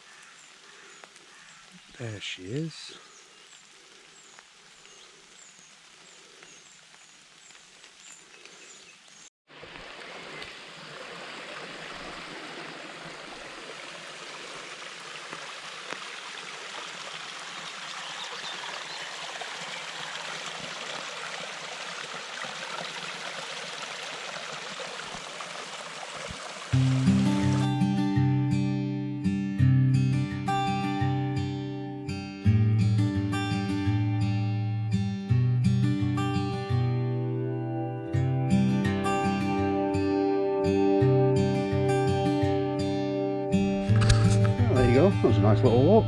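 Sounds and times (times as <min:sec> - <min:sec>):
water rushing: 0:09.5 - 0:28.5, 0:43.6 - 0:46.0.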